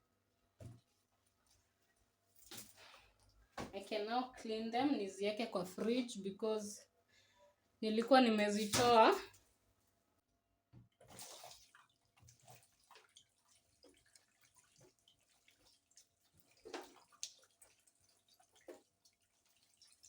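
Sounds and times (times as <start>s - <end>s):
water splashing and dripping: 11.0s - 20.0s.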